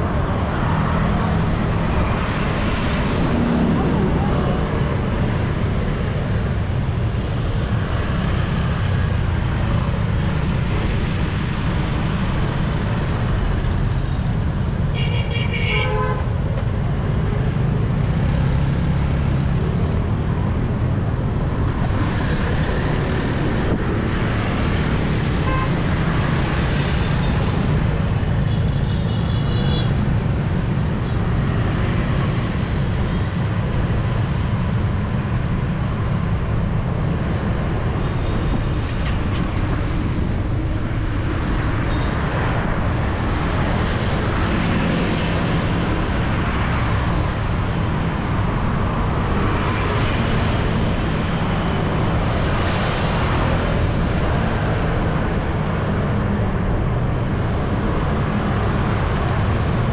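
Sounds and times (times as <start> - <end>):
dense street traffic rumble: 0.0 - 59.9
vehicle horn honking: 15.0 - 16.2.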